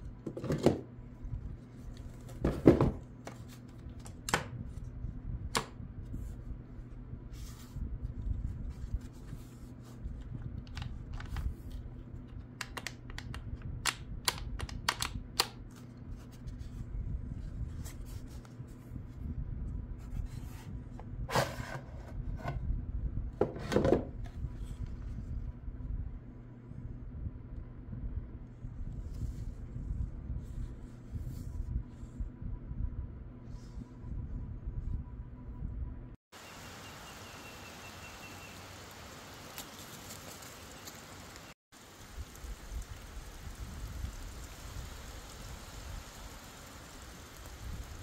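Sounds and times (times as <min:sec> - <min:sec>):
steady low hum: 0:00.0 - 0:14.6, 0:15.2 - 0:23.4, 0:24.1 - 0:36.2.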